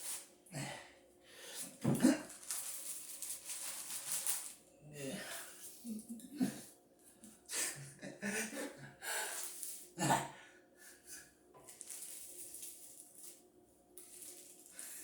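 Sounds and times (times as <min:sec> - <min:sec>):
man grunting: 0:04.9 - 0:05.4, 0:10.0 - 0:10.4.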